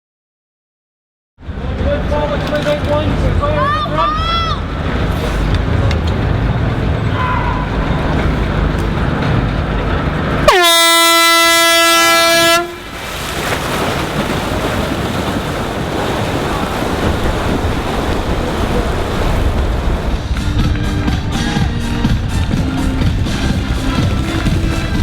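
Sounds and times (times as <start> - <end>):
steady rush of noise: 1.4 - 10.5, 15.6 - 25.0
air horn blast: 7.1 - 8.0, 10.4 - 12.9.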